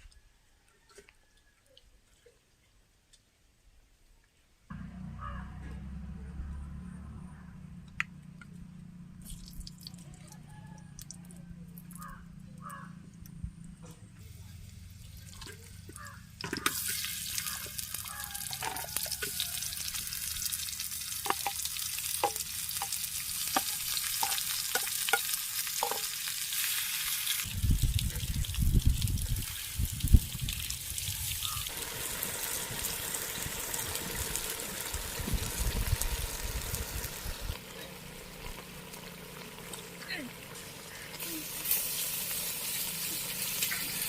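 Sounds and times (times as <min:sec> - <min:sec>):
low rumbling: 0:04.7 - 0:09.3
food sizzling in hot oil: 0:16.0 - 0:44.0.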